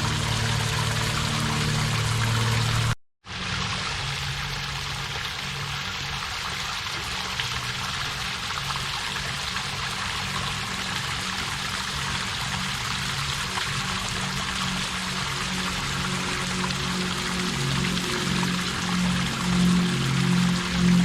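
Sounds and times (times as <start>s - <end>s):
waterfall rushing: 0.0s - 3.0s, 14.2s - 21.0s.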